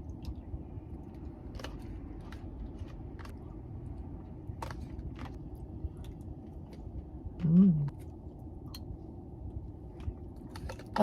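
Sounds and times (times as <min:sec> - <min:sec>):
chewing: 0:00.0 - 0:04.0
low steady rumble: 0:00.0 - 0:11.0.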